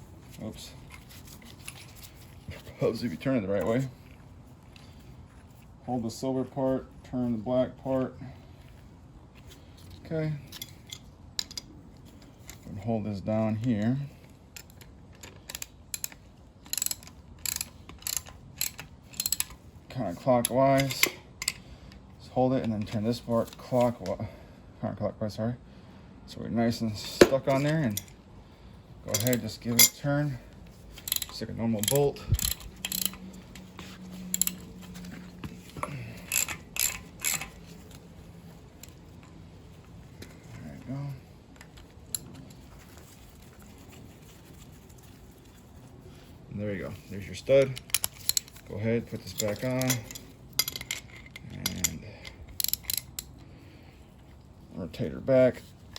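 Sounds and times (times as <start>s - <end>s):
metallic ratchet clicks: 15.4s - 19.6s, 31.0s - 34.7s, 35.8s - 38.0s, 49.3s - 53.3s.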